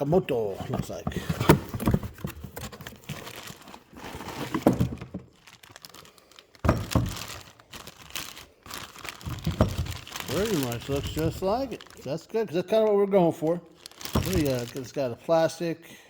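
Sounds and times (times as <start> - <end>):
packaging crinkling and tearing: 1.6 - 13.0, 13.7 - 15.1.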